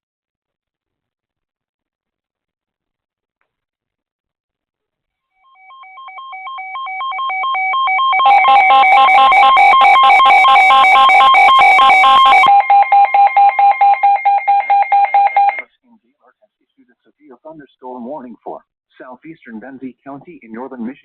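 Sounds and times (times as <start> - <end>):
shrill alarm: 5.5 - 15.6
weather radio beeping alarm: 5.5 - 15.6.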